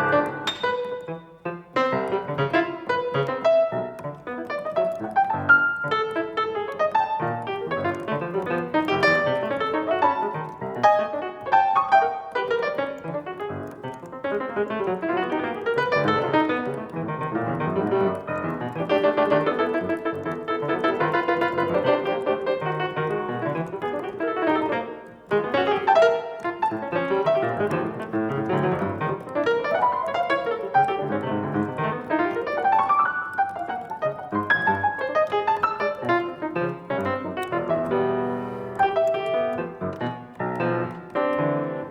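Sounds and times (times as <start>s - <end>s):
solo piano: 0.0s - 41.9s.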